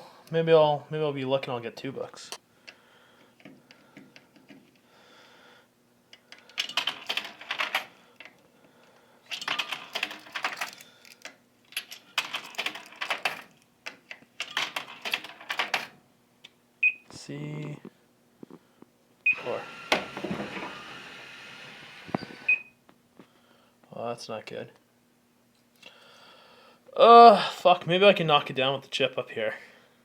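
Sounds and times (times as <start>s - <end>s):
rapid keyboard clicking: 12.2s - 13.5s.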